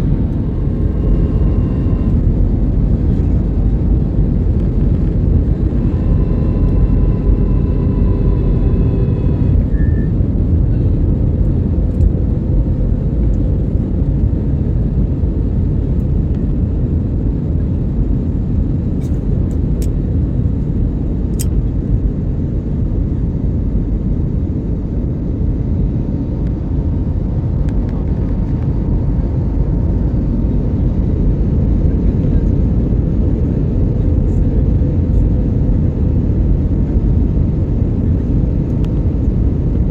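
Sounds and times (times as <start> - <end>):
high whining tones: 0.0 - 3.4, 4.6 - 10.3
airliner cabin engine rumble: 0.0 - 39.9
faint constant hum: 0.0 - 39.9.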